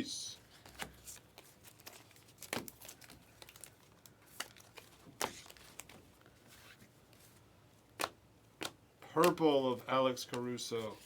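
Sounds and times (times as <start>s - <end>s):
foil wrapper crinkling: 0.6s - 6.0s.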